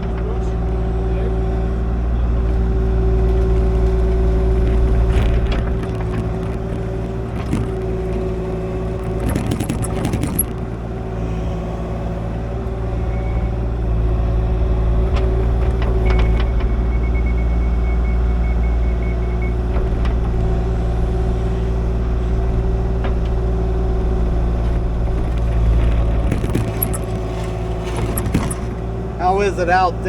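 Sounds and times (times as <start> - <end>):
excavator diesel engine running: 0.0 - 30.0
metal clanks and rattles: 3.3 - 10.8, 19.6 - 29.0.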